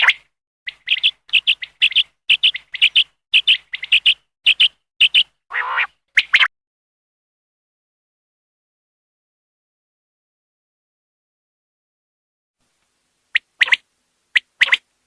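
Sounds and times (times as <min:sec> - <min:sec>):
quail chirping: 0:00.0 - 0:06.5, 0:13.3 - 0:14.9.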